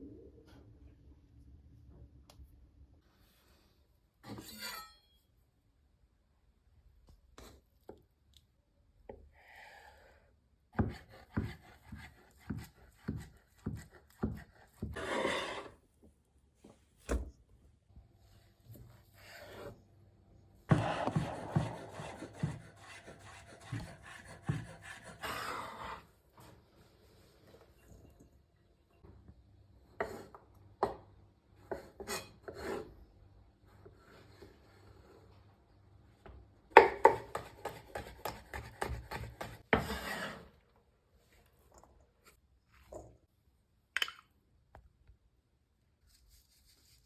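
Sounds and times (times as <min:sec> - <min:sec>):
knife chopping on cutting board: 0:10.8 - 0:15.0, 0:36.8 - 0:39.9.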